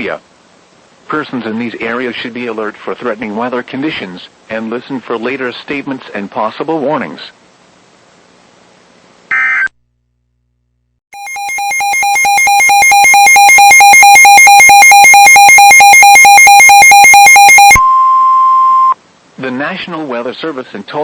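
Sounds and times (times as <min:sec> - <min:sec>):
pulsing electronic alarm tone: 0:11.2 - 0:19.0.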